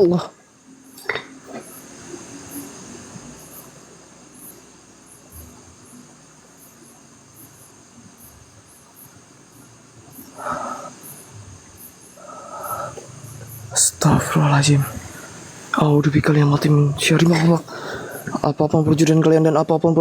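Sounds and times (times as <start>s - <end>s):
crickets chirping: 0.0s - 20.0s
high insect drone: 0.0s - 20.0s.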